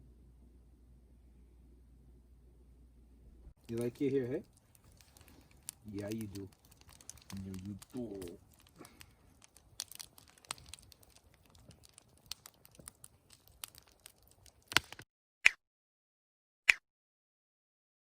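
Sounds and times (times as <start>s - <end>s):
faint rustling and crinkling: 3.6s - 15.0s
sharp clicks: 3.6s - 15.0s
small scattered clicks: 3.6s - 15.0s.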